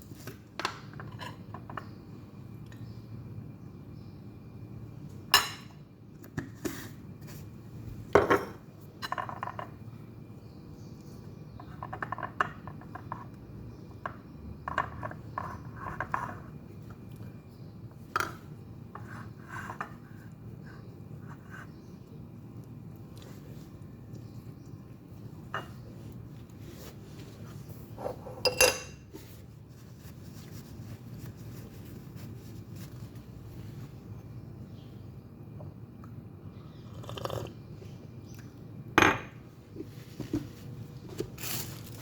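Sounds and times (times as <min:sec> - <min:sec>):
steady low hum: 0:00.0 - 0:42.0
dishes and cutlery clinking: 0:28.1 - 0:29.2.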